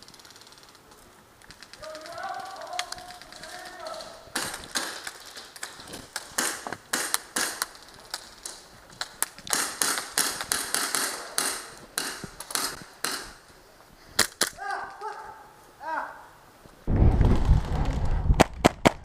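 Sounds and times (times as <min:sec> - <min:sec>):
airsoft rifle shots: 0:01.8 - 0:07.8, 0:09.4 - 0:13.4.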